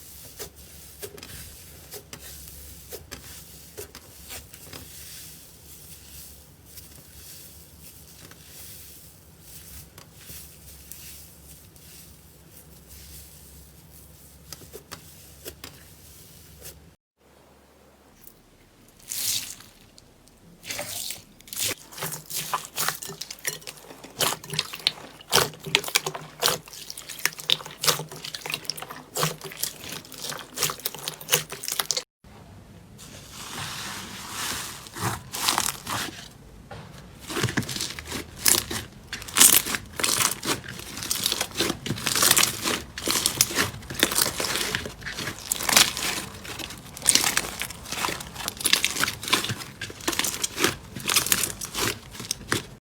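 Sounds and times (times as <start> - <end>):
slime squishing and crackling: 19.0 - 32.1, 33.3 - 36.4, 37.1 - 52.8.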